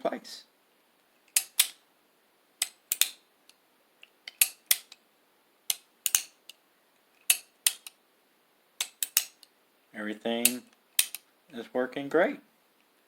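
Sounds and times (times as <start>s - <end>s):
revolver action metallic clicks: 1.3s - 1.8s, 2.6s - 5.0s, 5.7s - 6.6s, 7.2s - 8.0s, 8.8s - 9.5s, 10.4s - 11.3s.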